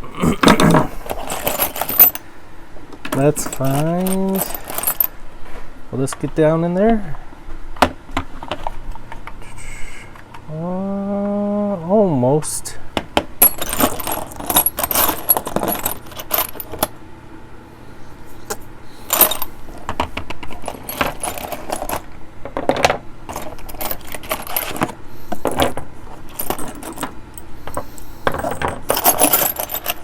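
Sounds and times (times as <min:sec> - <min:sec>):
metal hand tools clinking: 0:01.1 - 0:02.2, 0:19.1 - 0:19.5, 0:26.3 - 0:30.0.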